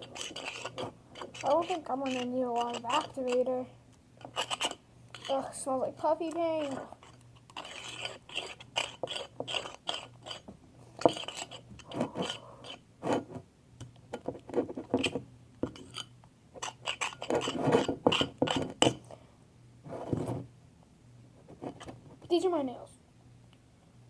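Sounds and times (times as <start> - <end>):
spoon stirring sticky slime: 0.0 - 3.6, 4.2 - 12.8.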